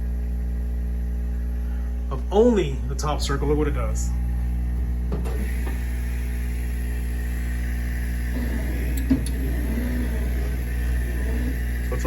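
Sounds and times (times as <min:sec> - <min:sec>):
laser cutter humming: 0:02.2 - 0:12.0
stepper motors whining: 0:04.8 - 0:12.0.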